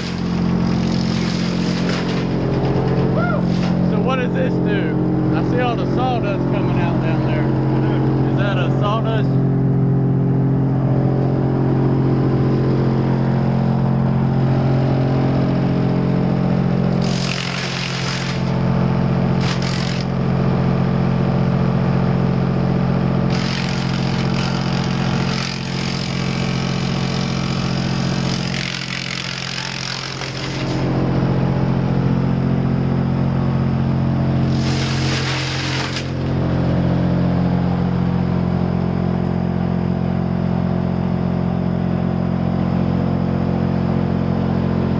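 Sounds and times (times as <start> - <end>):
harsh rushing grinding noise: 0.0 - 18.7, 19.3 - 20.2, 23.3 - 32.0, 34.2 - 36.8
sawmill machinery humming: 0.0 - 44.9.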